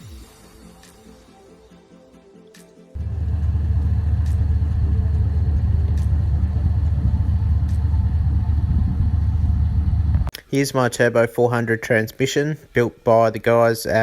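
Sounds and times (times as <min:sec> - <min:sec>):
engine running deep rumble: 0:03.0 - 0:10.3.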